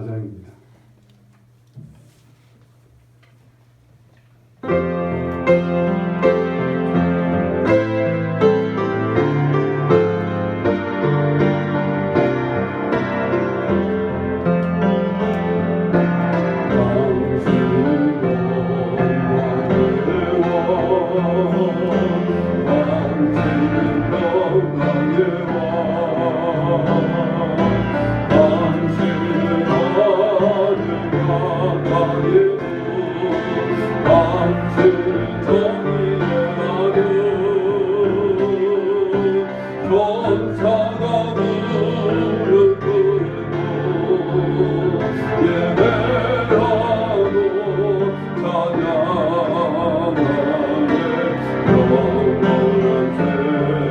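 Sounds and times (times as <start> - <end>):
slow piano music: 4.6 - 53.9
person singing with vibrato: 16.4 - 53.9.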